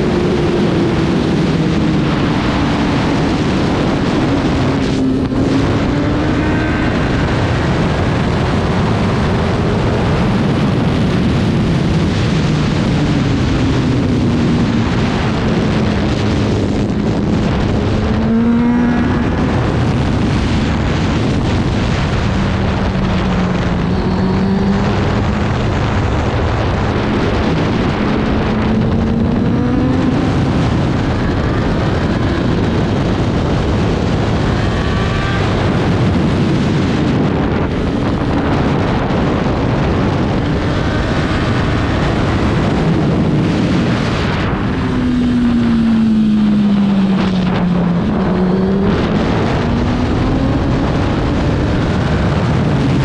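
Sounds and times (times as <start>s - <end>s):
racing motorcycle engine: 0.0s - 53.0s
wind rush: 0.0s - 53.0s.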